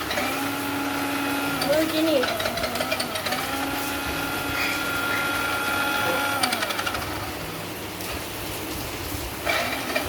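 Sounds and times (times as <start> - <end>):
small electric motor whining: 0.0 - 7.4.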